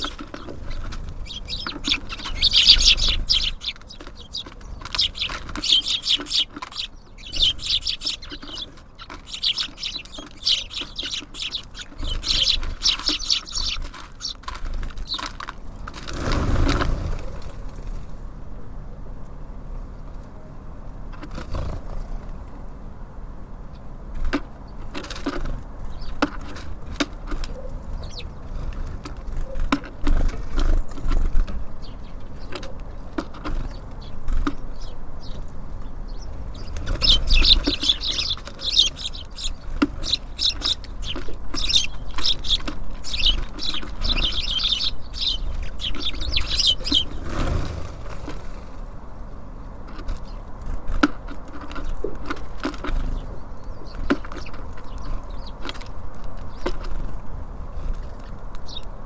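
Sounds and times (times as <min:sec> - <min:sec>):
high bird chirping: 0:00.0 - 0:15.3, 0:27.9 - 0:28.5, 0:33.7 - 0:47.4
bird wings fluttering: 0:00.0 - 0:17.6
birds tapping and pecking: 0:00.0 - 0:18.0, 0:24.1 - 0:48.8, 0:49.7 - 0:59.0.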